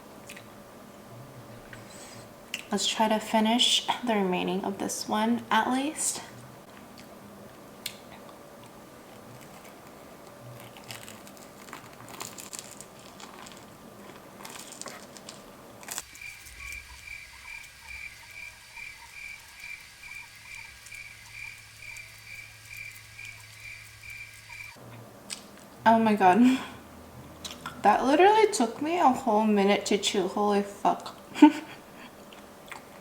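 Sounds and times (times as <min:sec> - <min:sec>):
chewing: 0:07.8 - 0:16.0, 0:32.2 - 0:33.0
low hum: 0:13.5 - 0:29.6
rhythmic chirping: 0:16.1 - 0:24.8.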